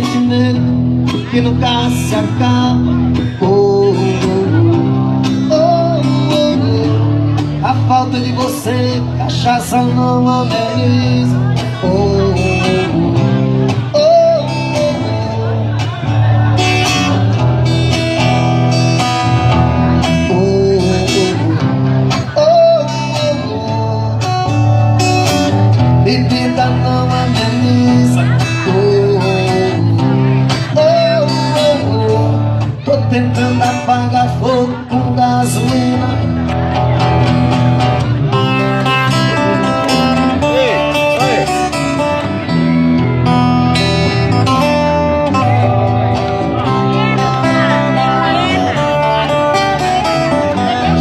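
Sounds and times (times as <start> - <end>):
plucked guitar melody: 0.0 - 51.0
steady bass line: 0.0 - 51.0.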